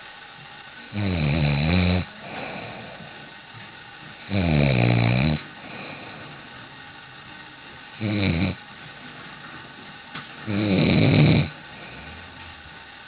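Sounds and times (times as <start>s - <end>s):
man snoring loudly: 0.9s - 3.0s, 4.3s - 6.0s, 8.0s - 8.6s, 10.5s - 12.3s
quiet breathing: 2.0s - 13.0s.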